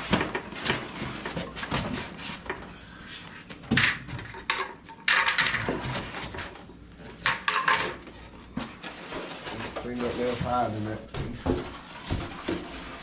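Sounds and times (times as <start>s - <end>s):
parts knocking and clattering: 3.6s - 13.0s.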